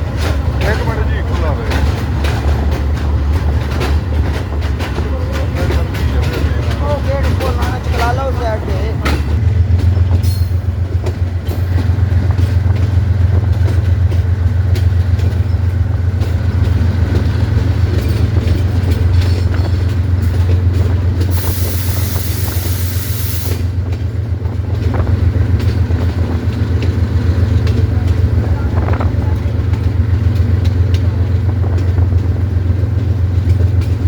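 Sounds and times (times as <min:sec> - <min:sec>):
locomotive engine droning: 0:00.0 - 0:34.0
burst of hiss: 0:21.3 - 0:23.6.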